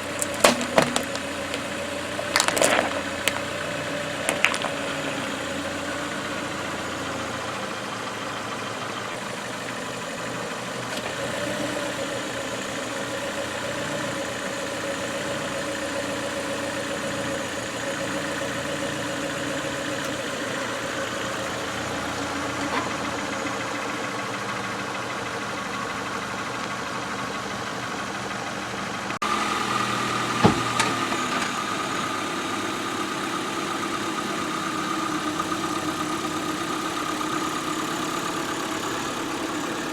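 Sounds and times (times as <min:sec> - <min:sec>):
car engine running: 0:00.0 - 0:39.9
sharp crack: 0:00.1 - 0:03.6.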